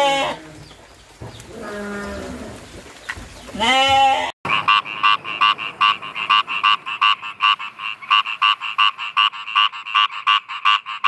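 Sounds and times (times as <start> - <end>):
frog croaking: 4.5 - 11.0.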